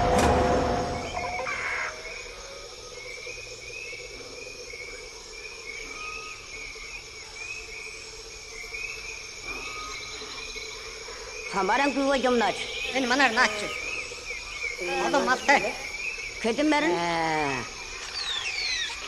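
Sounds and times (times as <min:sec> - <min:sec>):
small creatures chirping: 0:12.7 - 0:16.2.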